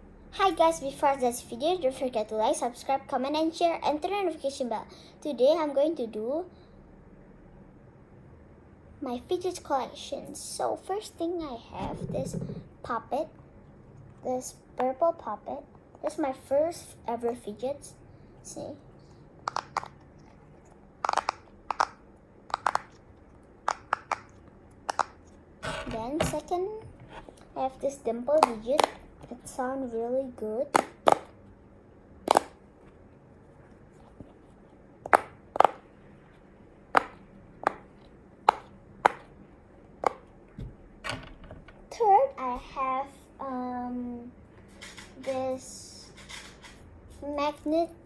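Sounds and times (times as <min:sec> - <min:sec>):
fidget toy bubbles popping: 0:11.8 - 0:12.8
pop-it toy bubbles popping: 0:23.7 - 0:24.3, 0:30.7 - 0:31.3, 0:32.2 - 0:32.6, 0:35.1 - 0:35.8, 0:37.0 - 0:37.8, 0:38.5 - 0:39.3.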